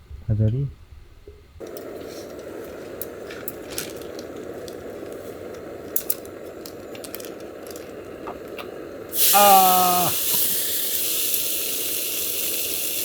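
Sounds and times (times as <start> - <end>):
crackles and pops: 1.6 - 13.0
food sizzling in a pan: 9.1 - 13.0.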